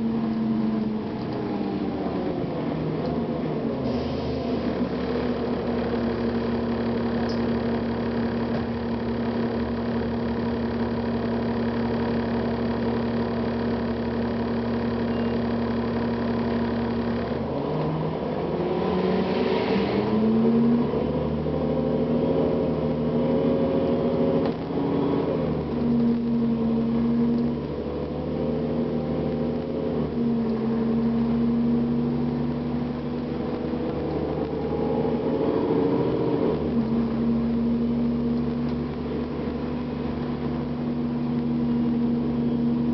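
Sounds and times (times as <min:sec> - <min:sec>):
diesel bus engine idling and revving: 0:00.0 - 0:42.9
brief air hiss: 0:03.8 - 0:04.4.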